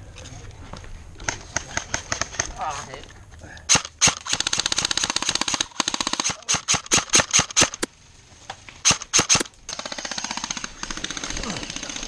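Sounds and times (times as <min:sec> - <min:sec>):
airsoft guns firing: 0:03.7 - 0:07.9, 0:08.9 - 0:12.0.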